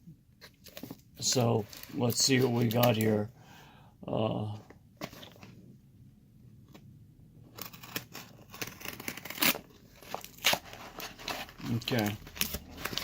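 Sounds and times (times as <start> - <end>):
packaging tearing and crinkling: 7.6 - 13.0.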